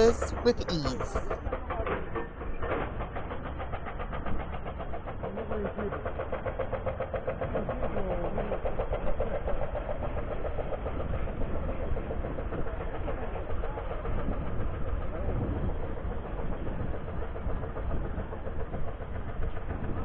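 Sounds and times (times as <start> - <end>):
faint voices: 0.0 - 2.0
street noise: 0.0 - 20.0
vehicle engine pulsing: 0.0 - 20.0.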